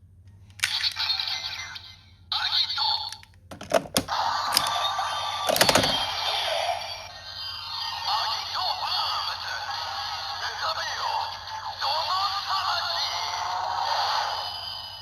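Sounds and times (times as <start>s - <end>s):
toy electronic music and effects: 2.4s - 8.4s
plastic lock clicks: 3.5s - 4.7s, 5.5s - 6.0s.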